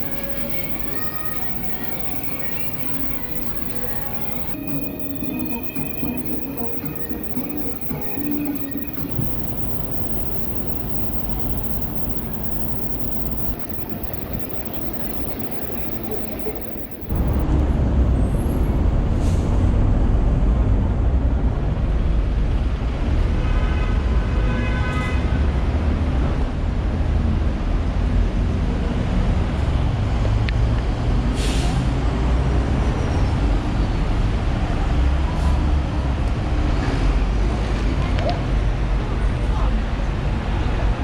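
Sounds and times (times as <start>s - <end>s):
high-pitched squeal: 0.0s - 17.4s.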